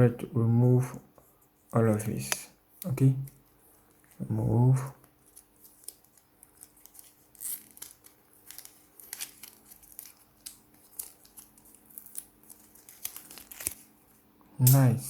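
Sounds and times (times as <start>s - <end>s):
packaging rustling and clicking: 5.0s - 13.9s.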